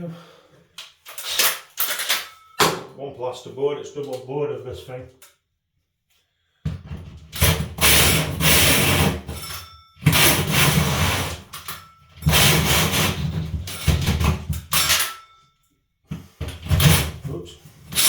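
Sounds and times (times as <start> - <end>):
power drill cutting plasterboard: 7.8 - 9.3, 10.0 - 11.5, 12.2 - 13.3.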